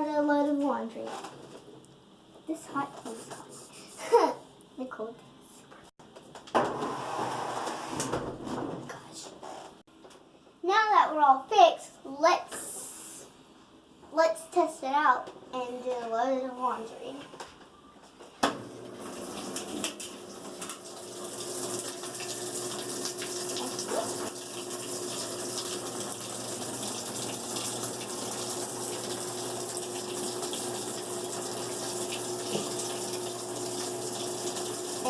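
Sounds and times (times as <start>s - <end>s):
water rushing into washing machine: 18.5s - 35.0s.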